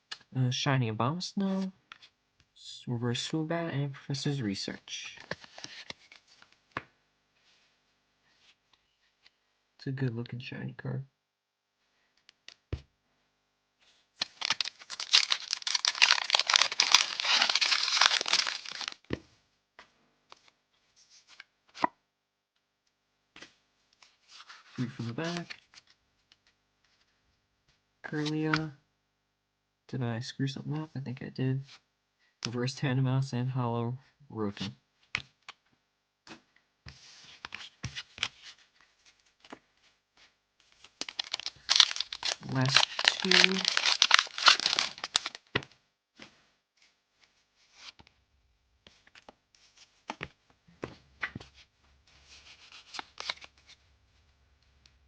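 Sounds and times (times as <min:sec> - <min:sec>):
foil wrapper tearing: 0:14.2 - 0:19.0, 0:41.0 - 0:45.5, 0:52.7 - 0:53.5.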